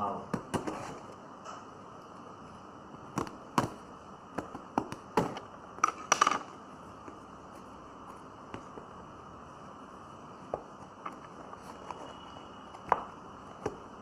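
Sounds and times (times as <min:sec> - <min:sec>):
objects clicking and tapping: 0:04.4 - 0:07.2.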